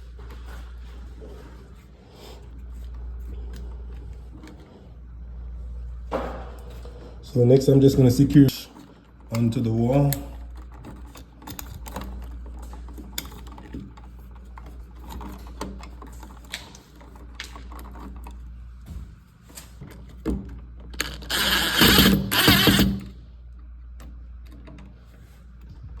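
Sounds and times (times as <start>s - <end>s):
metal and tool clicks: 8.5s - 18.4s, 20.9s - 23.1s
screw rasping: 21.0s - 23.1s.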